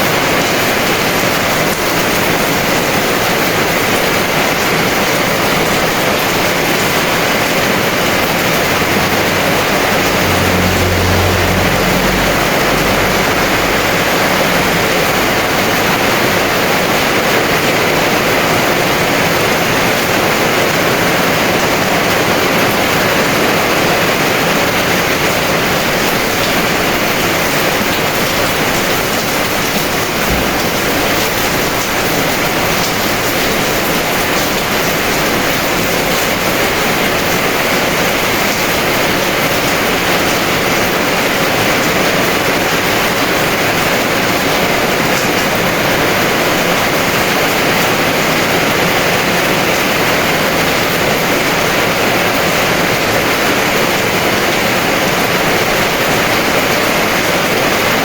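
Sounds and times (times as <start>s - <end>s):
heavy rain pouring: 0.0s - 58.0s
low rumble: 6.8s - 17.0s, 29.6s - 32.6s.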